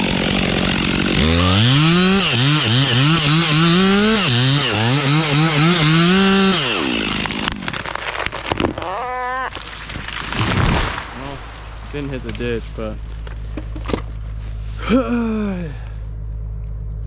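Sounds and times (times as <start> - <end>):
chainsaw cutting into tree: 0.0 - 8.8, 9.5 - 12.6.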